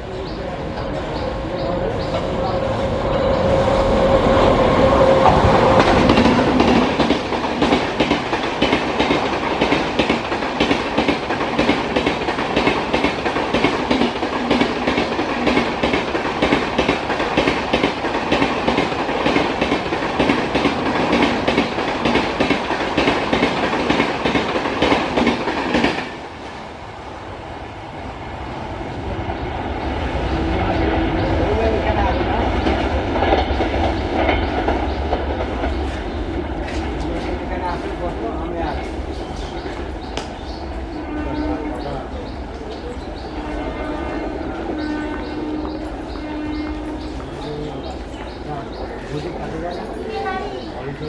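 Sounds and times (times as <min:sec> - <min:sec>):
train wheels clicking over rail joints: 0:05.1 - 0:26.2
locomotive horn: 0:41.0 - 0:42.0, 0:43.3 - 0:47.3.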